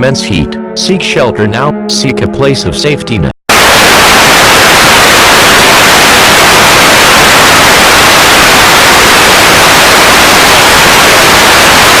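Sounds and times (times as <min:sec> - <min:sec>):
tv static hiss: 0:03.5 - 0:12.0.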